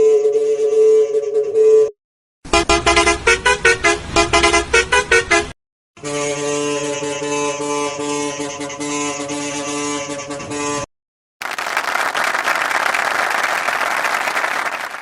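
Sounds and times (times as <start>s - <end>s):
bus horn blast: 2.5s - 10.9s.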